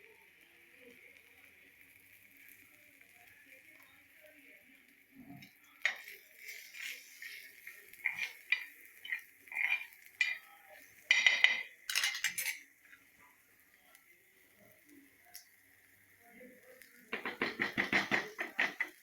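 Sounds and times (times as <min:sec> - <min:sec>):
utensil scraping and knocking cookware: 0:05.9 - 0:10.5, 0:11.1 - 0:12.6, 0:17.1 - 0:19.0.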